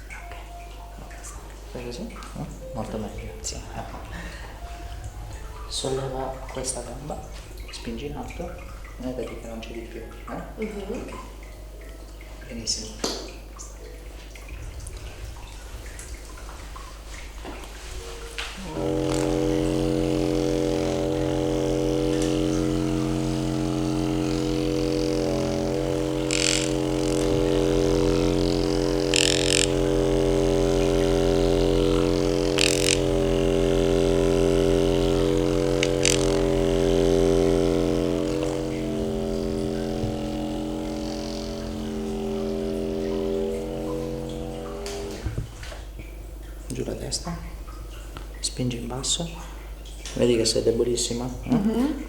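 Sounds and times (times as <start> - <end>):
electric motor humming: 17.9 - 45.9.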